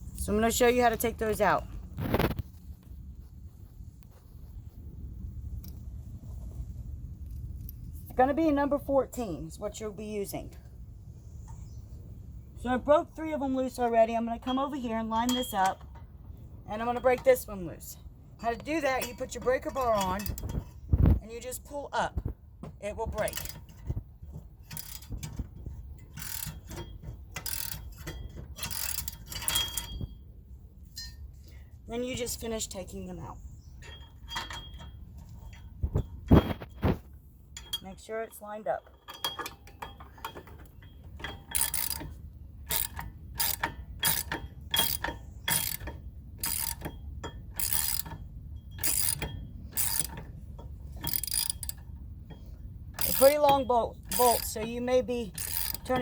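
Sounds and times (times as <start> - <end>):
socket wrench ratcheting: 23.2 - 23.8, 24.6 - 30.0, 41.2 - 54.7, 55.3 - 56.0.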